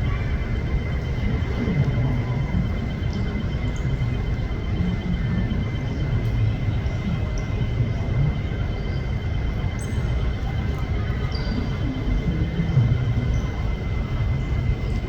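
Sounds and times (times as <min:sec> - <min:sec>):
jet engines rumbling and whining: 0:00.0 - 0:15.0.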